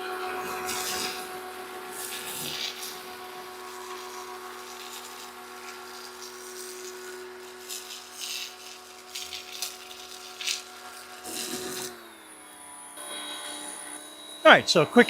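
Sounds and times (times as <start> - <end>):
pressure washer motor hum: 0.0 - 15.0
foam cannon spraying hiss: 0.6 - 12.0.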